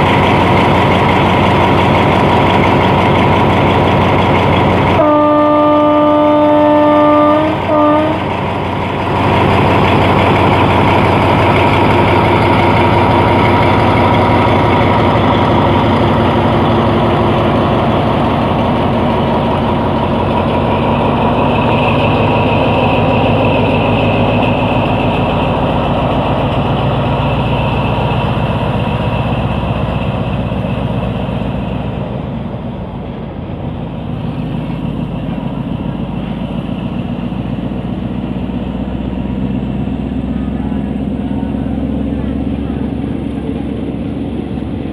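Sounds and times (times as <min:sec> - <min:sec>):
diesel engine running loudly: 0:00.0 - 0:44.9
diesel locomotive horn: 0:04.9 - 0:08.4.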